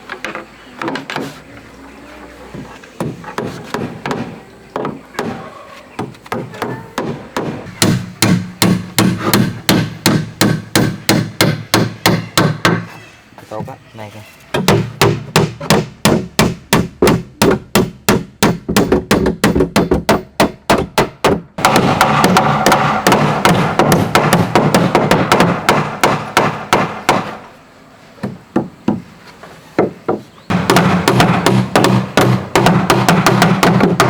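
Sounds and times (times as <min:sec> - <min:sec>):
tool striking wood: 0:06.0 - 0:12.9, 0:14.6 - 0:27.4, 0:29.8 - 0:34.0.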